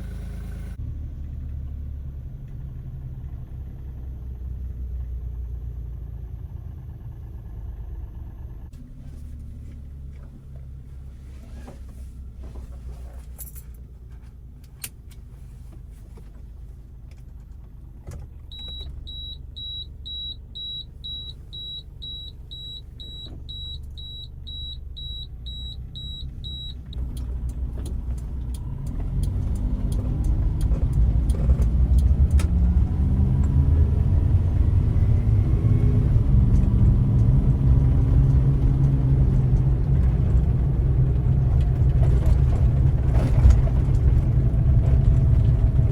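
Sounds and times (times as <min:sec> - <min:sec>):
car engine rumbling: 0:00.0 - 0:45.9
high in-car warning beeps: 0:18.5 - 0:27.3.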